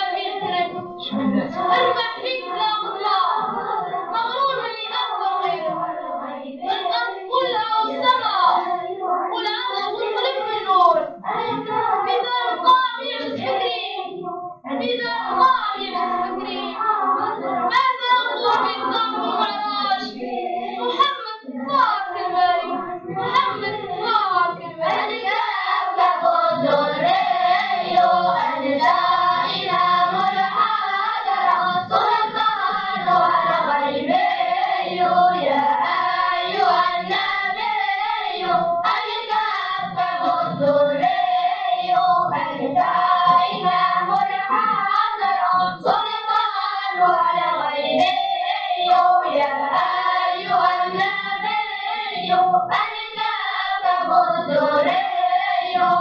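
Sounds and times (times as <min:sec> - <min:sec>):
children's choir singing: 0:00.0 - 0:56.0
hand clapping: 0:47.9 - 0:51.6.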